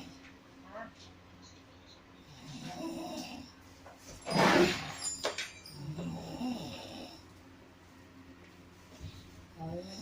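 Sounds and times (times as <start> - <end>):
person snoring: 5.8 - 7.2, 9.6 - 10.0.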